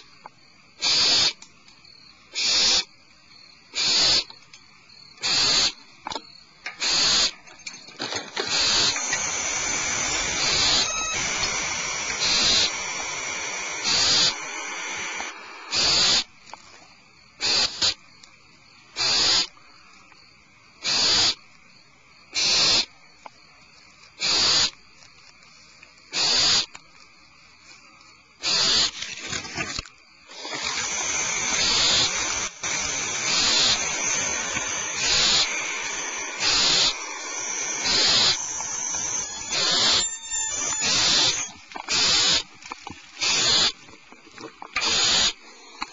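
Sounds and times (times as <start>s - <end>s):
owls hissing: 0.8s - 1.4s, 2.3s - 2.9s, 3.7s - 4.3s, 5.2s - 5.8s, 6.8s - 7.4s, 8.4s - 16.3s, 17.4s - 18.0s, 19.0s - 19.5s, 20.8s - 21.4s, 22.4s - 22.9s, 24.2s - 24.8s, 26.1s - 26.7s, 28.4s - 29.0s, 30.3s - 42.5s, 43.2s - 43.8s, 44.8s - 45.4s.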